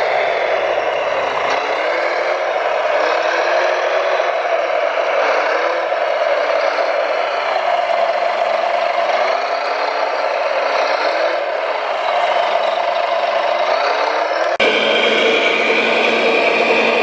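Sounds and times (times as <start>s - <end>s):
electric motor and gears whirring: 11.7s - 17.0s
machine sound: 14.6s - 17.0s.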